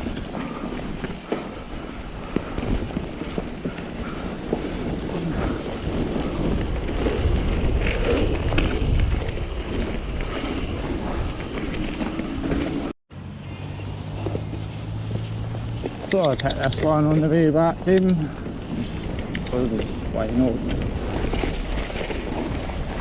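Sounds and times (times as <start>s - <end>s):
mountain bike rattling on trail: 0.0s - 12.9s, 15.2s - 23.0s.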